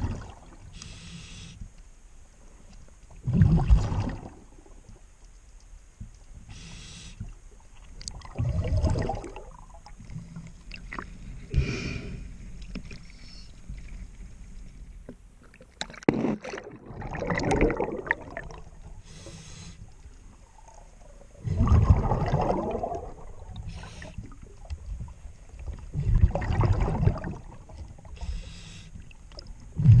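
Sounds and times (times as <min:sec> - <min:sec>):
diver breathing through regulator: 0:00.8 - 0:01.6, 0:06.5 - 0:07.3, 0:11.4 - 0:12.4, 0:19.0 - 0:19.9, 0:23.7 - 0:24.2, 0:28.2 - 0:29.0
exhaled bubbles rushing: 0:03.2 - 0:04.5, 0:08.2 - 0:09.8, 0:16.4 - 0:19.0, 0:20.6 - 0:23.6, 0:26.0 - 0:27.9.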